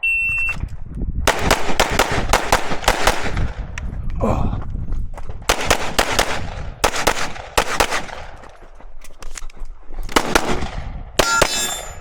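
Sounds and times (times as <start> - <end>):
pistol shots with echo: 1.3 - 3.6, 5.5 - 8.4, 10.1 - 12.0
metallic ringing: 11.2 - 12.0.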